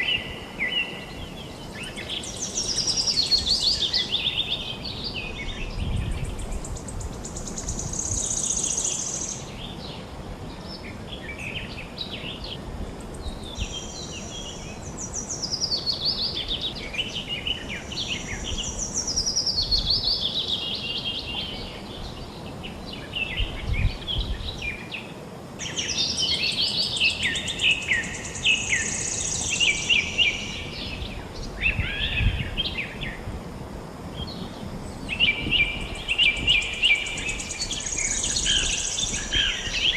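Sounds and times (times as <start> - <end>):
songbirds singing and calling: 0.0 - 33.3, 34.1 - 39.9
flowing river water: 0.0 - 39.9.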